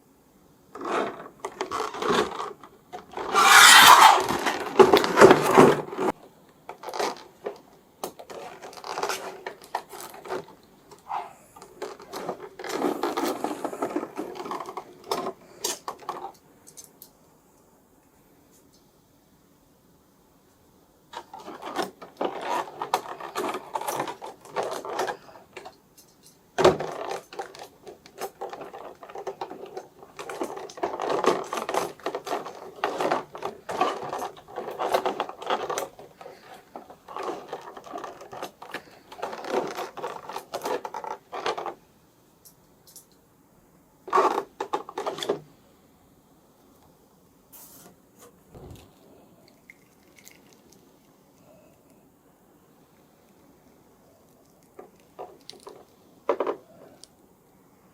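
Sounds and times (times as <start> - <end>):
plastic packaging rustling: 8.2 - 16.3, 26.8 - 41.8.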